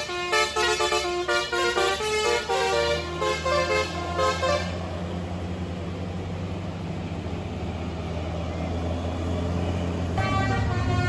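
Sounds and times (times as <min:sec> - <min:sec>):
bus multi-tone horn melody: 0:00.0 - 0:05.1, 0:10.1 - 0:11.0
bus engine droning: 0:00.0 - 0:11.0.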